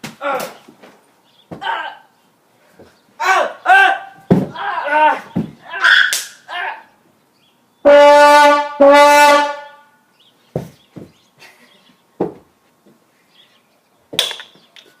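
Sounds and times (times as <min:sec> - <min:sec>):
loud brassy horn blasts: 0:07.8 - 0:10.0
soft knocks: 0:10.6 - 0:11.2.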